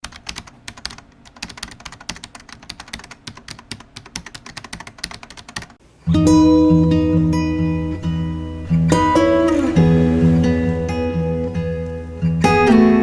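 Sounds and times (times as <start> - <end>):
typing on computer keyboard: 0.0 - 5.8
acoustic guitar chord strummed: 6.0 - 13.0.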